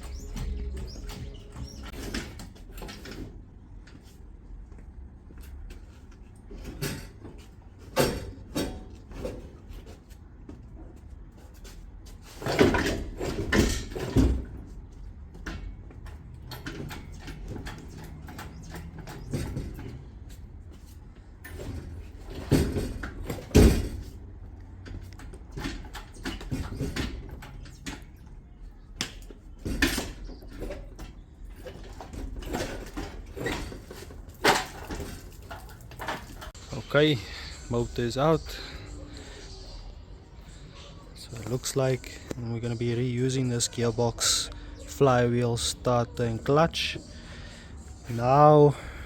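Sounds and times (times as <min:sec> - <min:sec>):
metal knocks and clunks: 0:12.3 - 0:20.2, 0:29.0 - 0:36.6.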